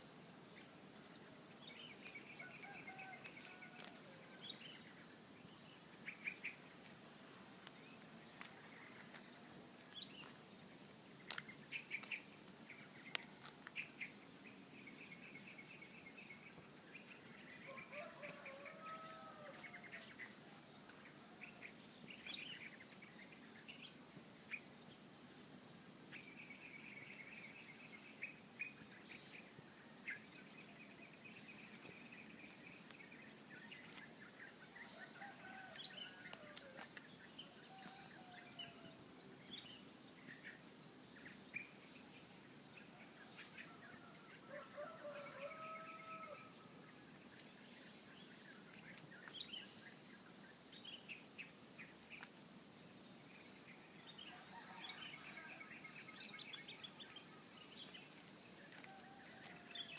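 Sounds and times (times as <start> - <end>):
small birds chirping: 0.5 - 17.5
distant rooster crowing: 17.7 - 19.9, 44.0 - 46.5, 54.3 - 55.7.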